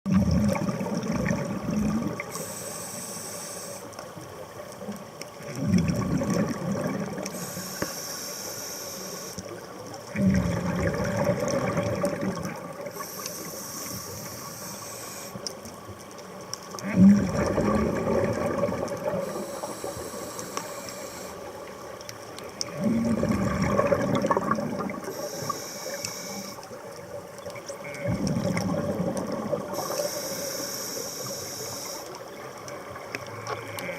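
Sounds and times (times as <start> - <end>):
exhaled bubbles rumbling: 0.1 - 2.3, 4.5 - 7.4, 9.9 - 13.1, 16.7 - 20.2, 21.4 - 25.5, 26.6 - 30.0
regulator hiss on inhalation: 2.2 - 3.9, 7.3 - 9.6, 12.9 - 15.5, 19.2 - 21.5, 25.1 - 26.7, 29.7 - 32.2.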